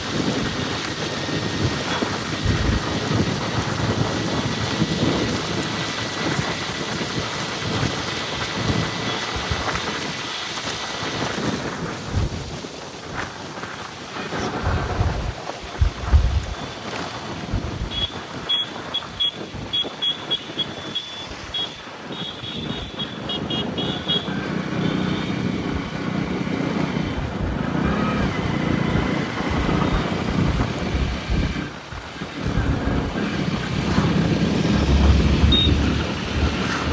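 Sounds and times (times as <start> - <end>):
motorcycle engine running: 0.0 - 36.9
wind rush: 0.0 - 36.9
tyre noise: 13.2 - 19.1
short high-pitched beeps: 35.4 - 35.8.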